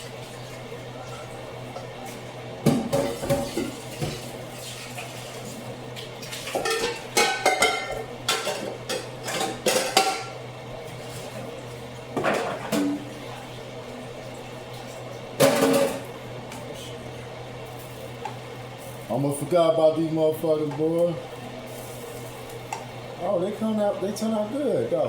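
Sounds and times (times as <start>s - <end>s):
dishes and cutlery clattering: 6.5s - 10.3s.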